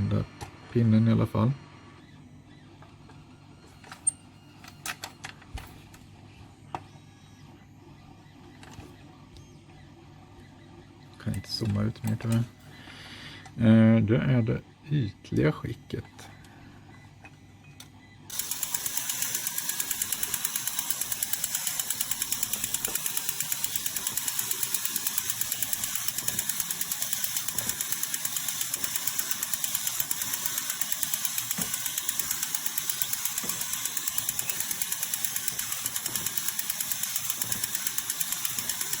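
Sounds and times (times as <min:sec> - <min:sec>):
toy gears clicking: 0:18.3 - 0:39.0.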